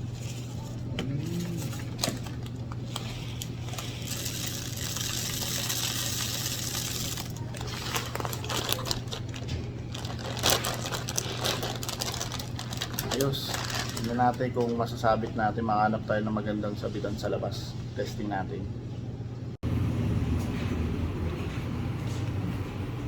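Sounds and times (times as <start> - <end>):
seed pouring hiss: 3.6 - 7.8.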